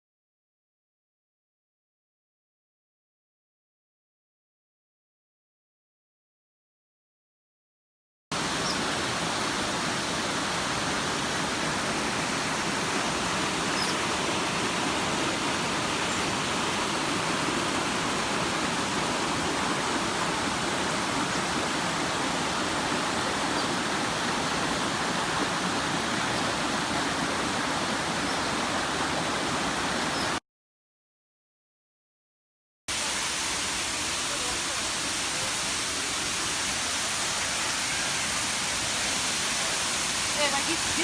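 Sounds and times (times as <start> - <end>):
waterfall rushing: 8.4 - 30.4, 32.9 - 41.0.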